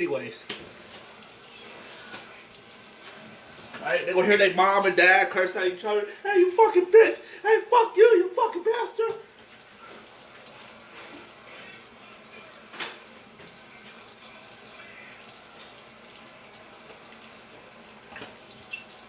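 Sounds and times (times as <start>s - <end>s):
bacon sizzling in grease: 0.0s - 19.0s.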